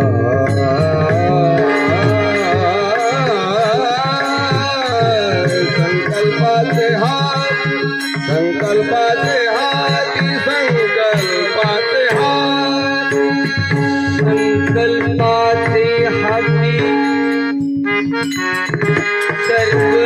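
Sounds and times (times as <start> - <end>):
man singing ornamented melody: 0.0 - 17.6, 18.8 - 20.0
hand drum rhythm: 0.0 - 20.0
sustained harmonium-like tones: 0.0 - 20.0.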